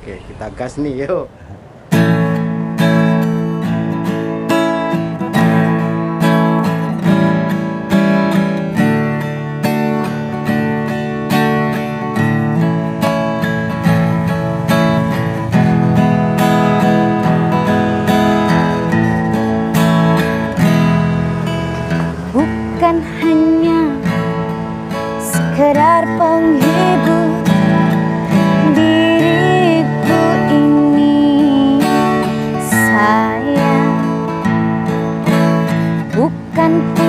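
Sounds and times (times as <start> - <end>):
acoustic guitar strumming: 1.3 - 37.0.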